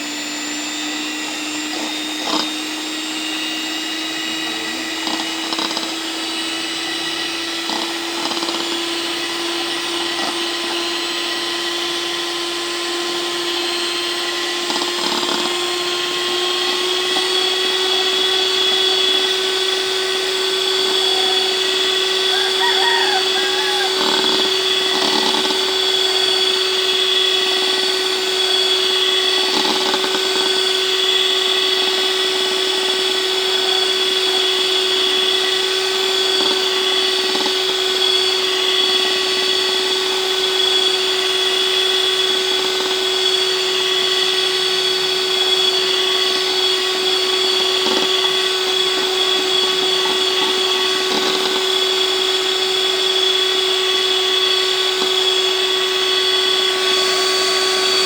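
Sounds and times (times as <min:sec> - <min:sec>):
electric hand mixer whining: 0:00.0 - 0:58.0.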